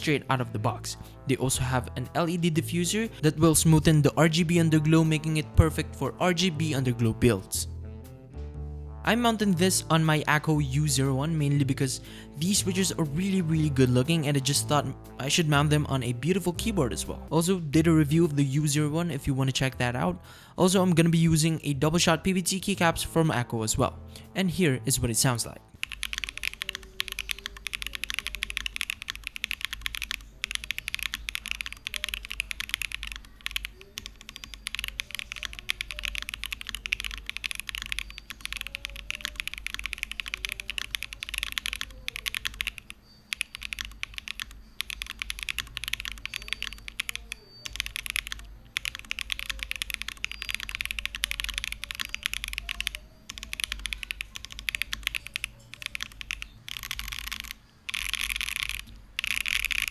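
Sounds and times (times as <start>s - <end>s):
fast keyboard typing: 25.7s - 59.9s.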